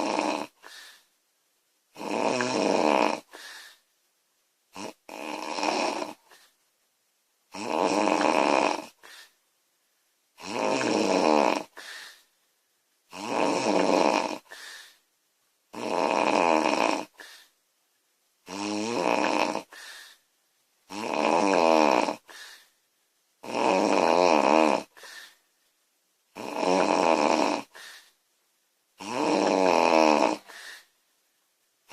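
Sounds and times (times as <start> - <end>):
woman snoring loudly: 0.0 - 0.8, 1.9 - 3.4, 4.8 - 6.4, 7.5 - 9.1, 10.4 - 11.8, 13.1 - 14.6, 15.7 - 17.3, 18.5 - 19.8, 20.9 - 22.4, 23.4 - 25.1, 26.3 - 27.8, 29.0 - 30.6.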